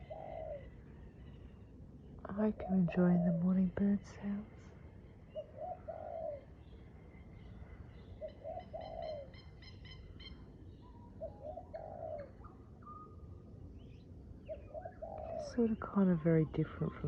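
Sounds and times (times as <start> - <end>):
dove cooing: 0.0 - 1.0, 2.3 - 3.9, 5.3 - 6.7, 8.0 - 13.2, 14.5 - 17.0.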